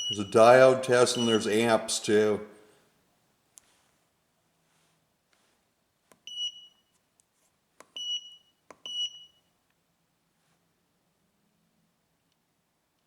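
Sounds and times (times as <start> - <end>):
short high-pitched beeps: 0.0 - 0.4, 1.1 - 1.5.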